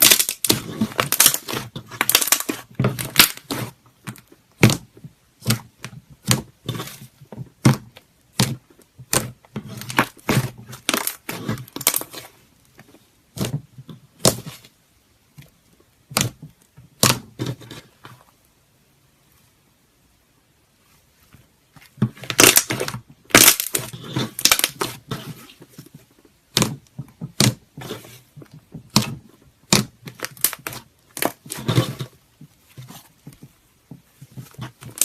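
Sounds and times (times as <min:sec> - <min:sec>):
slime popping and crackling: 0:00.0 - 0:12.4, 0:22.1 - 0:25.4, 0:28.8 - 0:32.1, 0:34.5 - 0:35.0.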